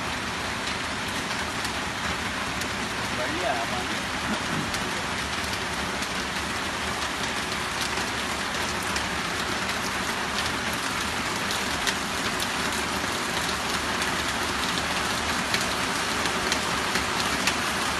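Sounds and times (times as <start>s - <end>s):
steady rain: 0.0s - 17.9s.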